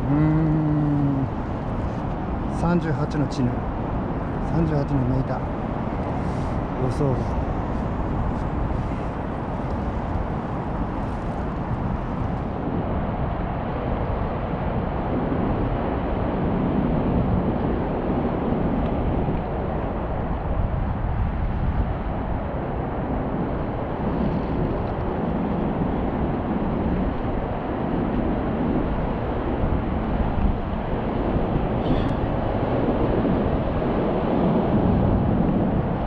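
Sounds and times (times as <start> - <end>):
wind noise on microphone: 0.0 - 36.0.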